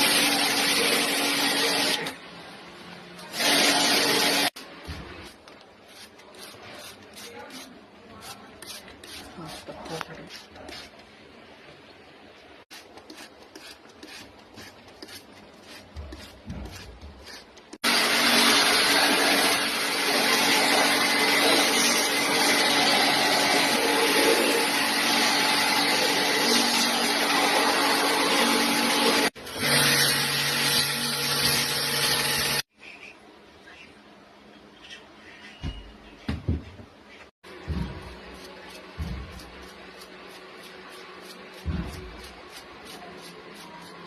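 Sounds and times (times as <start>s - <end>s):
scrubbing strokes: 5.1s - 11.2s, 12.7s - 17.8s.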